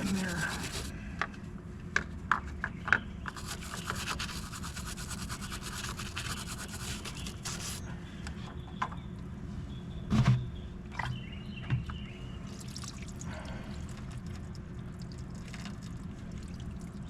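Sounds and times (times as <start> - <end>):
wire brush scrubbing metal: 0.0 - 0.9, 3.4 - 7.8.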